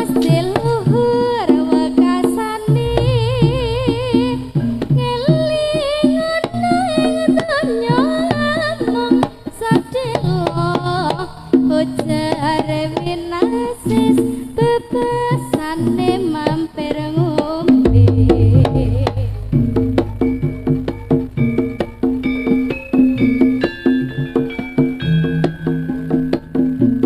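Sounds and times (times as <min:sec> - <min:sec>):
hand drum strokes: 0:00.0 - 0:14.2, 0:17.8 - 0:27.0
deep bass note: 0:02.8 - 0:05.0, 0:17.9 - 0:22.4
wavering sliding melody: 0:17.9 - 0:22.8.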